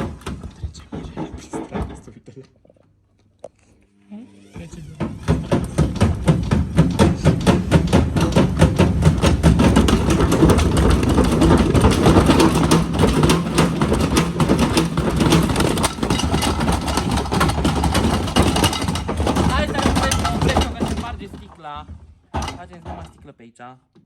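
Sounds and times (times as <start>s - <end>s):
washing machine rhythmic knocking: 0.0s - 2.1s, 5.0s - 23.2s
washing machine motor hum: 4.0s - 23.1s.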